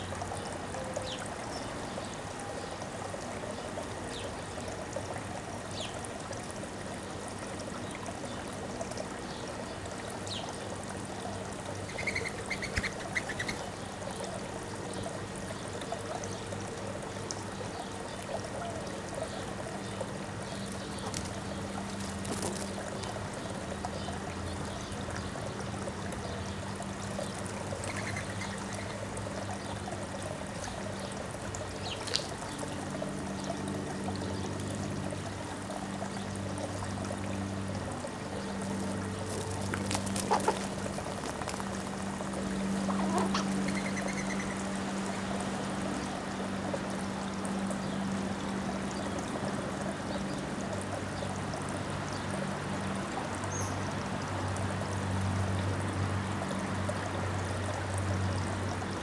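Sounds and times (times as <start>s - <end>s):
low steady hum: 0.0s - 59.0s
trickling water-like hiss: 0.0s - 59.0s.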